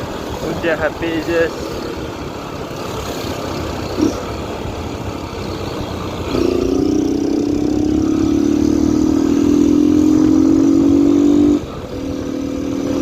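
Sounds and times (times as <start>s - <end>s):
motorcycle engine revving: 2.7s - 13.0s.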